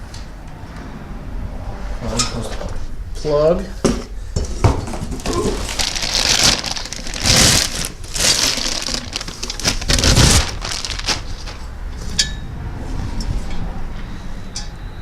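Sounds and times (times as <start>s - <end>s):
metal tools clattering and scraping: 11.4s - 12.5s.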